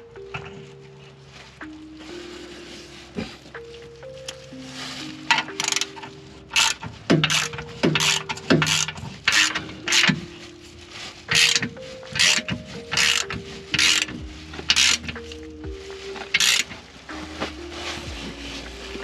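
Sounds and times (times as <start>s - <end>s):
ratchet wrench clicking: 5.6s - 5.9s, 6.5s - 10.1s, 11.3s - 15.2s, 16.3s - 16.8s.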